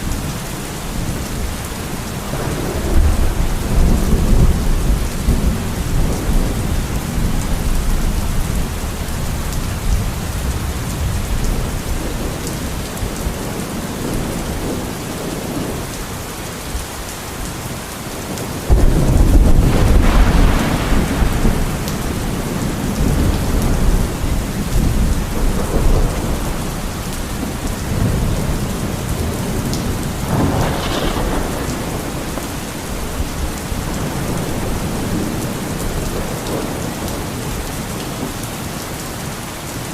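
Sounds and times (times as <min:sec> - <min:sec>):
thunder rumbling: 0:00.0 - 0:15.9, 0:18.2 - 0:38.4
steady rain: 0:00.0 - 0:39.9
loud thunderclap: 0:02.3 - 0:08.7, 0:18.3 - 0:37.6.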